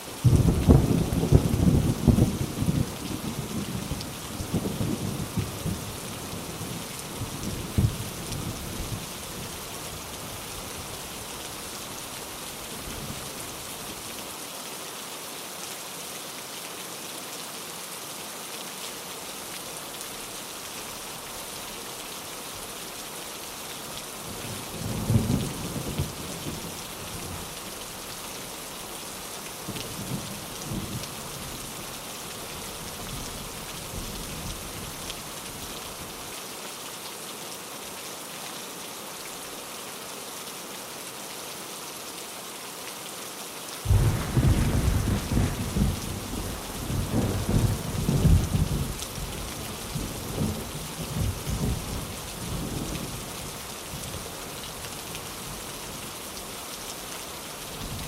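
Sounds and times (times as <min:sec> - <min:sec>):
heavy rain: 0:00.0 - 0:58.0
thunder rumbling: 0:43.9 - 0:52.0.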